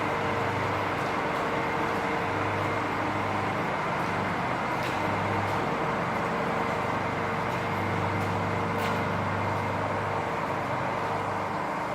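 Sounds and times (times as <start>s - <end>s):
motor running steadily: 0.0s - 11.9s.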